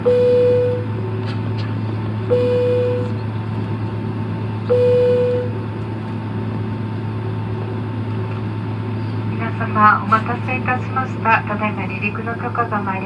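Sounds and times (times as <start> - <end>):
low hum of aircraft cabin: 0.0 - 13.0
cabin chime tones: 2.3 - 3.2.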